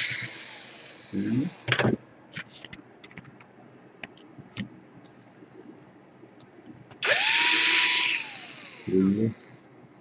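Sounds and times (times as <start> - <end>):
electric screwdriver whirring: 0.0 - 1.1, 7.0 - 8.9.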